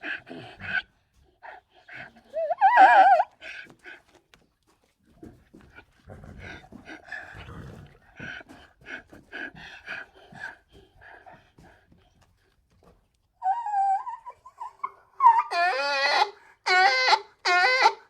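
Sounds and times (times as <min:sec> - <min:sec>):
donkey braying: 0:01.9 - 0:03.4, 0:13.4 - 0:18.0.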